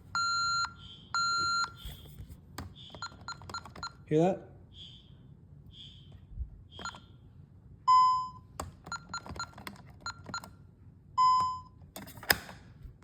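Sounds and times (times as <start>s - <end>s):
security keypad beeping: 0.1s - 2.0s, 2.7s - 4.0s, 5.8s - 7.2s, 7.9s - 10.6s, 11.2s - 11.8s
keypad key clicks: 2.5s - 4.0s, 6.8s - 7.1s, 8.6s - 10.6s.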